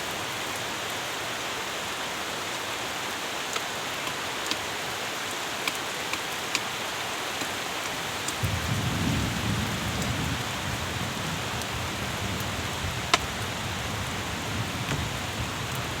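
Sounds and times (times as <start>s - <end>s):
rain hissing: 0.0s - 16.0s
sharp drip ticks: 3.0s - 8.5s.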